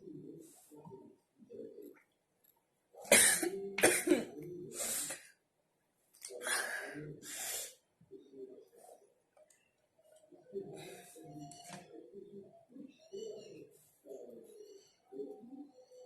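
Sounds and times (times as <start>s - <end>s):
woman coughing: 3.1s - 4.3s.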